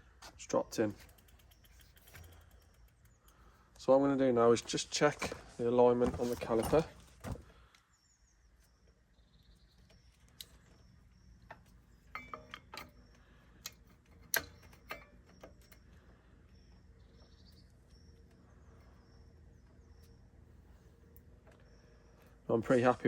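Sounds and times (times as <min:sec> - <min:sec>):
faint bird chirps: 0:07.6 - 0:23.0.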